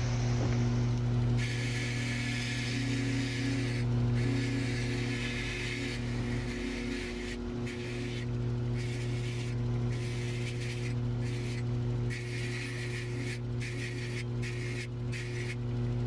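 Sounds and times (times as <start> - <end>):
belt grinder motor humming: 0.6 - 16.0
high hissing grind of blade: 1.4 - 15.6.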